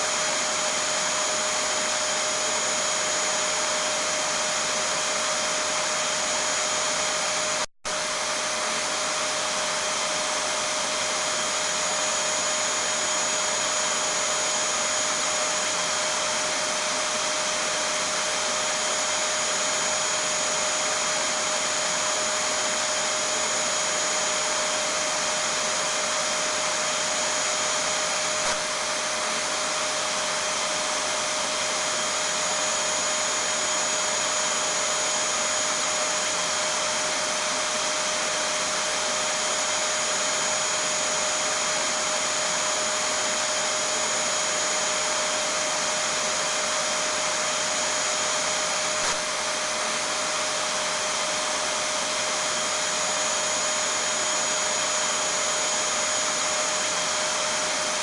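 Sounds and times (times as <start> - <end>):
vacuum cleaner running: 0.0 - 58.0.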